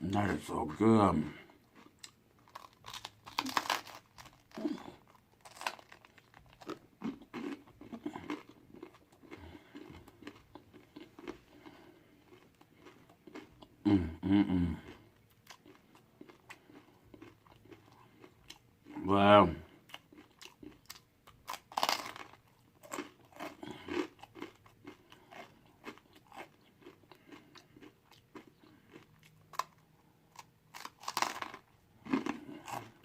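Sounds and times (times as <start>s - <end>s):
crunching pizza crust: 1.8s - 13.5s, 20.2s - 29.8s, 30.4s - 33.0s
person humming: 13.9s - 14.9s.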